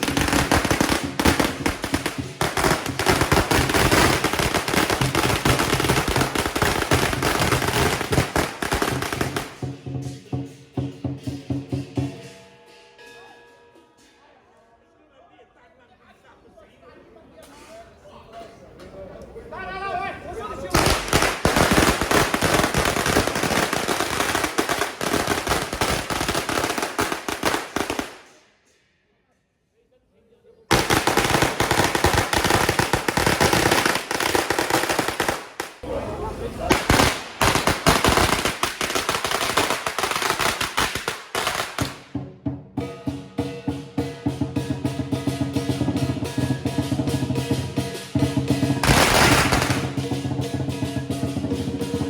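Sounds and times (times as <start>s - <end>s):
firecrackers crackling: 0.0s - 10.6s, 20.6s - 28.5s, 30.7s - 42.2s, 48.4s - 52.0s
cymbals and gong ringing: 8.9s - 14.2s, 42.8s - 52.0s
large drum beating: 42.0s - 52.0s.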